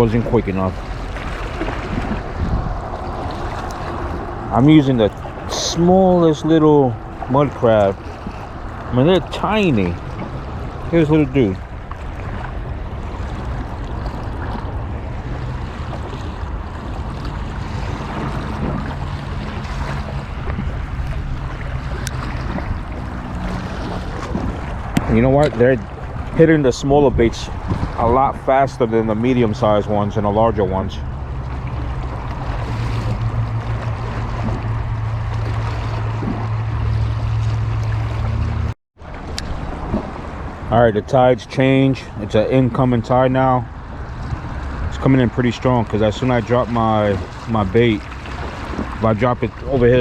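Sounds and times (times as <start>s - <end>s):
low steady hum: 0.0s - 39.6s
moving water: 0.0s - 50.0s
wind rumble on microphone: 0.0s - 50.0s.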